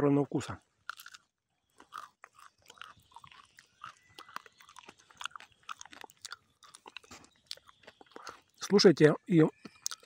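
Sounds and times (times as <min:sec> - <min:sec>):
crunchy chewing: 0:00.6 - 0:08.8, 0:09.5 - 0:10.0.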